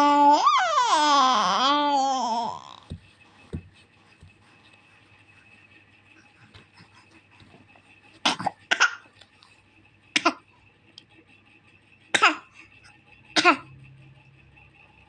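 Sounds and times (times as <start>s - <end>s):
baby pretend coughing: 8.2s - 9.1s, 10.2s - 10.4s, 12.2s - 12.5s, 13.4s - 13.7s.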